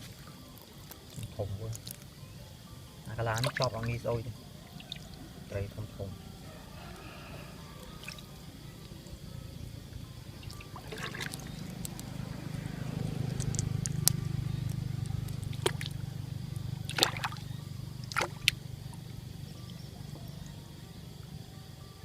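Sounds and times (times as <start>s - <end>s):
shallow water sloshing and trickling: 0.0s - 5.6s, 7.5s - 9.2s, 9.9s - 21.3s
low steady hum: 0.0s - 22.0s
sharp splashes: 3.3s - 4.0s, 4.6s - 5.2s, 7.8s - 8.4s, 10.2s - 19.1s.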